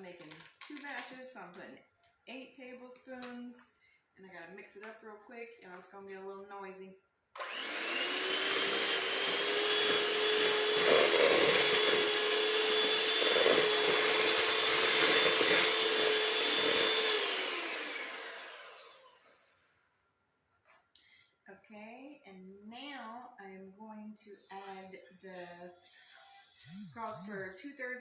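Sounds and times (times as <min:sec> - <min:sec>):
electric mixer motor whining: 0:07.4 - 0:19.7, 0:26.6 - 0:27.6.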